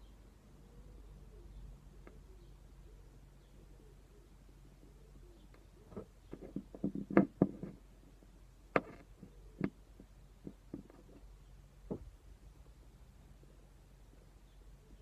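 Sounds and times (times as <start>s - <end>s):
small sharp knocks and clicks: 5.9s - 7.8s, 8.7s - 11.2s.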